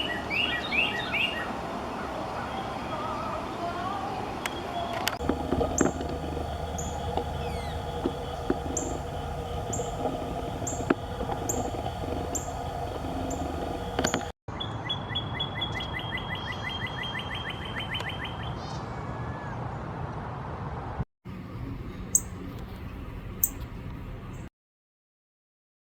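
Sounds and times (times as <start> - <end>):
bird rapid trill: 0.0 - 3.5, 4.5 - 14.3, 22.1 - 22.4.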